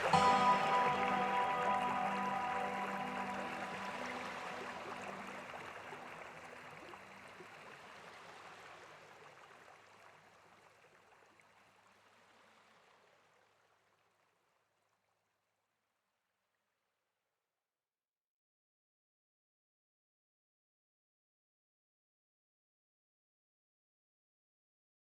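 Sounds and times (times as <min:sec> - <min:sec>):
soft background music: 0:00.0 - 0:06.6
running water: 0:00.0 - 0:13.1.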